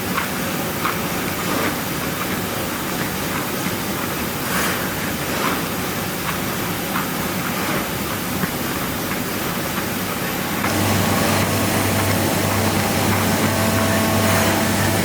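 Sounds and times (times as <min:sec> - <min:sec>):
cutting machine mechanical hiss: 0:10.7 - 0:15.0
low hum: 0:10.7 - 0:15.0.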